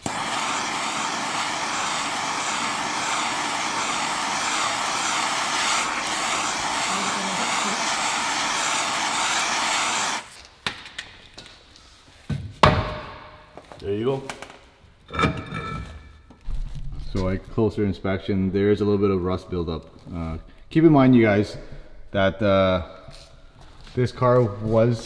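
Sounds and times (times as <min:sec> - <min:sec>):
heat tool rushing hiss: 0:00.0 - 0:10.4.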